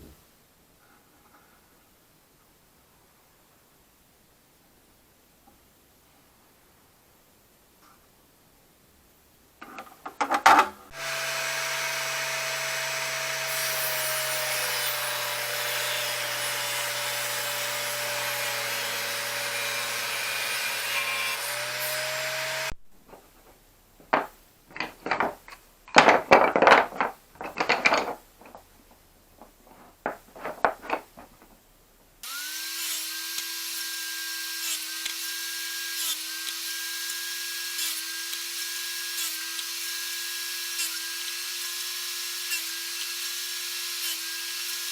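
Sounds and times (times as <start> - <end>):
power tool running: 10.9 - 22.7, 32.2 - 44.9
circular saw cutting log: 10.9 - 22.8, 32.2 - 44.9.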